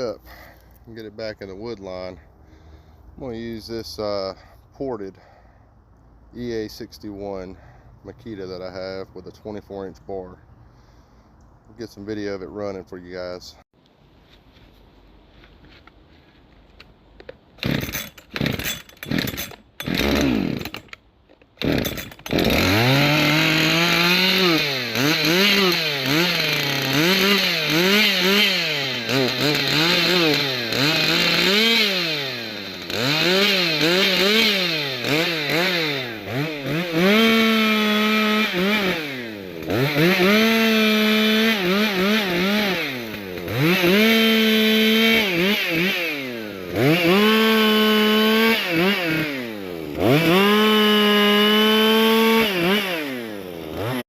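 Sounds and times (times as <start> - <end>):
chainsaw sputtering and revving: 17.6 - 21.0, 21.6 - 54.0.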